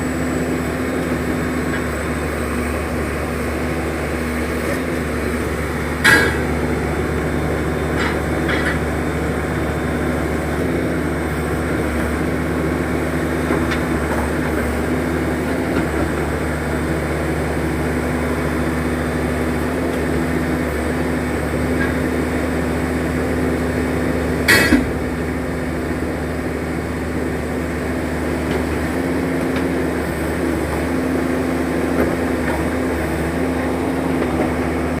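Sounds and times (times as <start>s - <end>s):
diesel engine droning: 0.0s - 35.0s
sharp metal clank: 6.0s - 6.5s, 24.5s - 25.6s.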